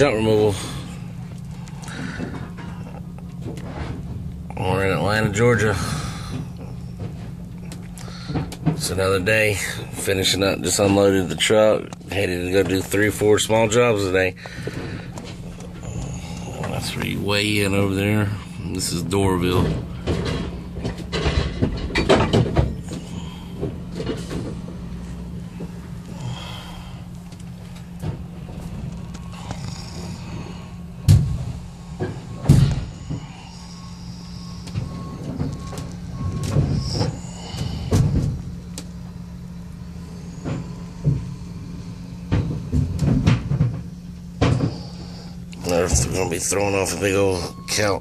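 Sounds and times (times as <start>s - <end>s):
vehicle engine humming: 0.0s - 48.0s
clattering knocks and rattles: 1.4s - 10.1s, 18.9s - 26.6s, 42.2s - 45.0s.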